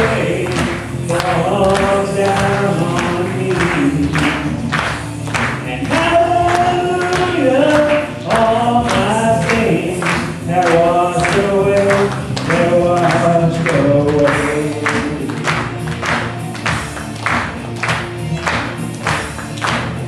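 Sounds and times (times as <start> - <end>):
person singing long held notes: 0.0 - 4.5
instrumental accompaniment with beat: 0.0 - 20.0.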